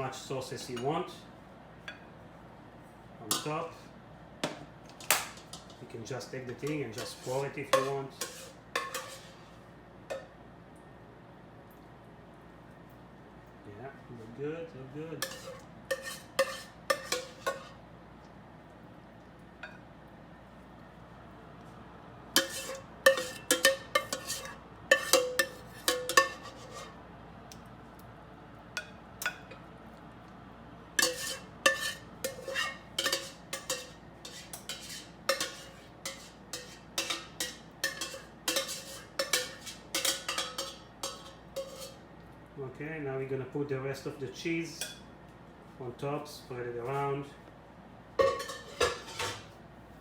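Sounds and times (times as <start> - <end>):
metal utensil clinking on cookware: 6.6 - 9.3, 15.2 - 17.7, 22.4 - 26.9, 31.0 - 42.0, 48.2 - 49.5.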